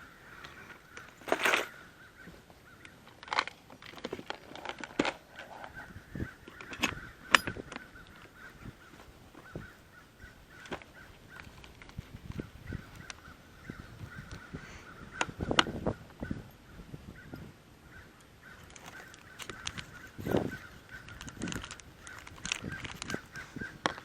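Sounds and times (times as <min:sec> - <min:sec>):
crows cawing: 0:05.4 - 0:24.0.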